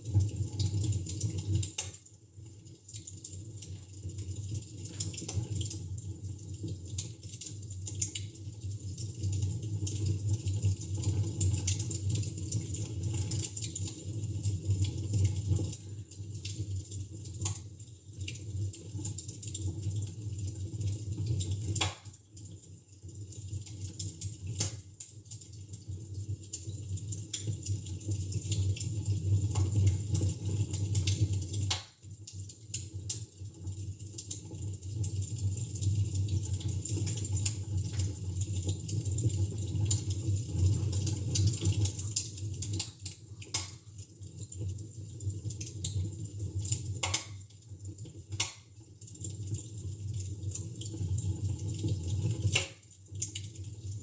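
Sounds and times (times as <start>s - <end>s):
fire crackling in a fireplace: 0.0s - 54.0s
sharp pops of burning wood: 31.7s - 32.0s, 42.8s - 43.8s, 47.0s - 47.4s, 48.4s - 48.7s.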